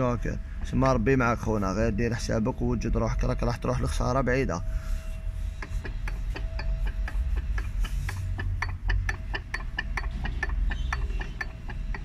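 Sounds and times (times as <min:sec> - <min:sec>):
rapid clicking: 0:05.6 - 0:12.0.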